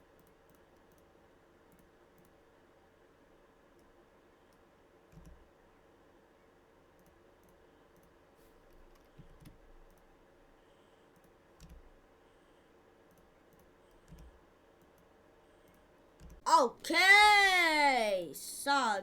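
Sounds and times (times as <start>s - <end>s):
computer mouse clicks: 0.1s - 1.1s, 1.7s - 2.4s, 4.5s - 5.5s, 7.0s - 10.1s, 11.1s - 12.0s, 13.0s - 16.4s.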